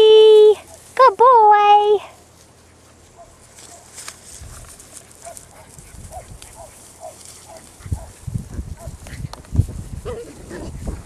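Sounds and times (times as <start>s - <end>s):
light clicks and scuffling: 2.2s - 7.8s.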